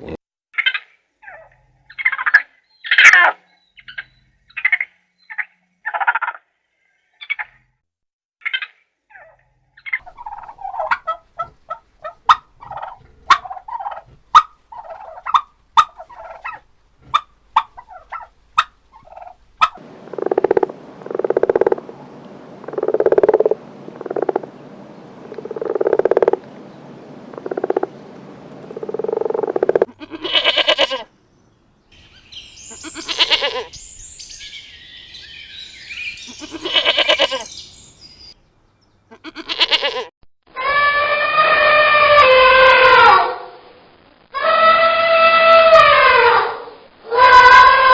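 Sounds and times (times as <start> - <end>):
farm animal calls: 9.1 - 19.8, 29.6 - 31.1, 31.9 - 38.4, 39.0 - 40.1.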